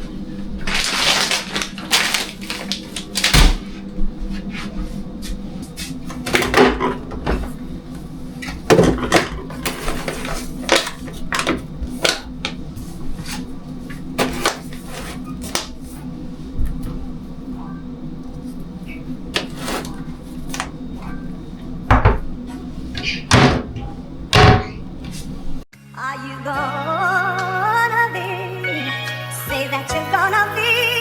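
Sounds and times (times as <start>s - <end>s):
steady low hum: 0.0s - 25.7s
household objects clattering: 6.2s - 7.6s, 8.4s - 12.6s, 21.9s - 25.6s.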